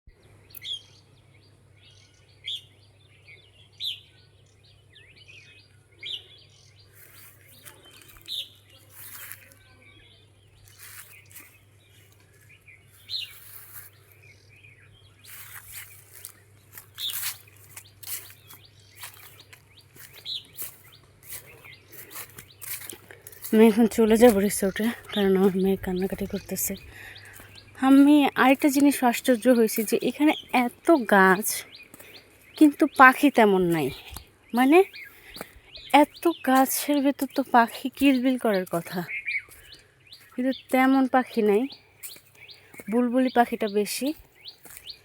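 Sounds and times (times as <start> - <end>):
small birds chirping: 0.1 - 45.0.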